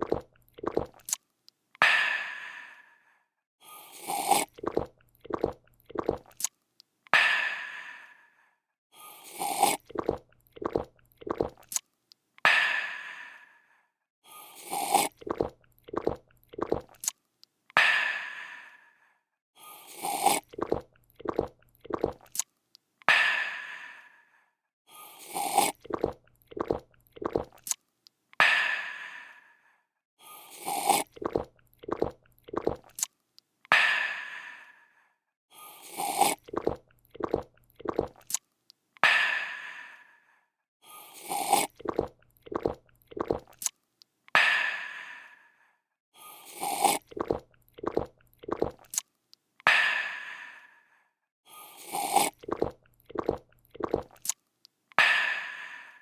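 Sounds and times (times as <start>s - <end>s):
slurping and gulping: 0.0s - 1.2s, 3.6s - 6.6s, 9.0s - 13.1s, 14.3s - 18.5s, 19.6s - 22.5s, 25.0s - 27.8s, 30.3s - 34.3s, 35.6s - 39.9s, 40.9s - 43.8s, 46.2s - 50.6s, 51.5s - 54.4s.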